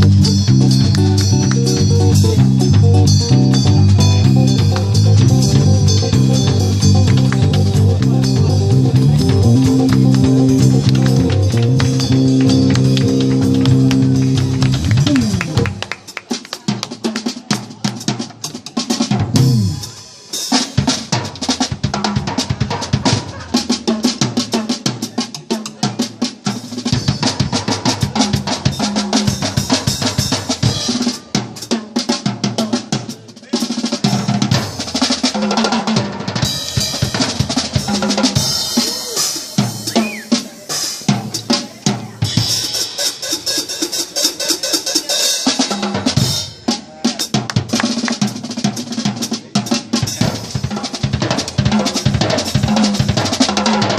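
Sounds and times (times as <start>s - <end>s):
bass guitar low notes: 0.0s - 15.9s, 19.3s - 20.0s
drum kit played fast: 0.0s - 53.9s.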